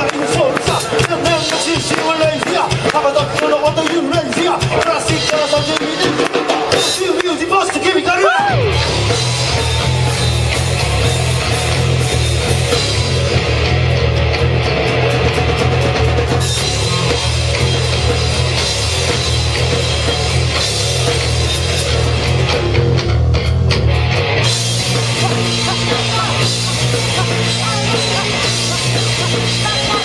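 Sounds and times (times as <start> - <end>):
electric guitar: 0.0 - 30.0
drum kit and cymbals: 8.2 - 30.0
low bass riff: 8.4 - 30.0.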